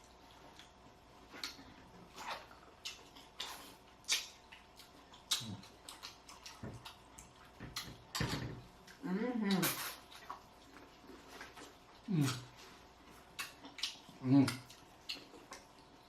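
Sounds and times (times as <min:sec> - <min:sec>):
chewing and lip-smacking: 0:00.0 - 0:16.0.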